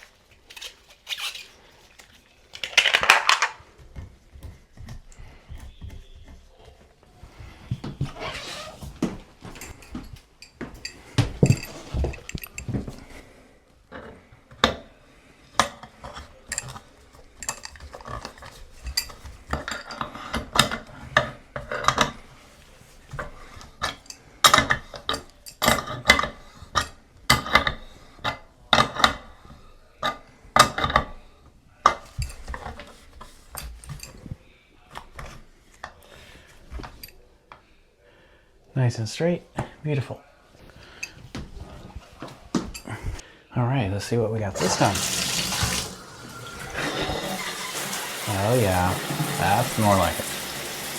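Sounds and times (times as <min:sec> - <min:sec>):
handling and scraping: 0:00.0 - 0:14.6, 0:15.2 - 0:37.3, 0:44.4 - 0:50.9
metal tools clinking and knocking: 0:09.4 - 0:13.1, 0:16.0 - 0:22.2, 0:23.2 - 0:27.8, 0:31.9 - 0:34.3.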